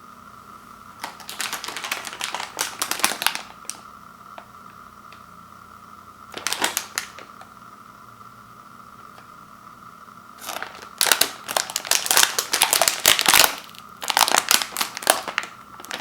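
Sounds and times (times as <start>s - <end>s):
plastic package crinkling: 1.0s - 3.8s, 6.3s - 7.5s, 10.4s - 16.0s.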